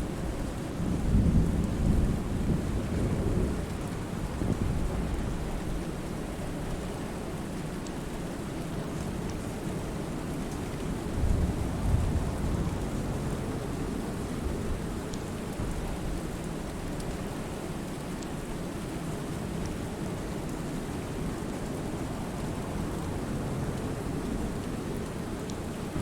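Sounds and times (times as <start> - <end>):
steady rain on a lake: 0.0 - 26.0
low rumble of thunder: 0.7 - 6.1, 11.1 - 15.0
raindrop ticks: 17.8 - 18.4.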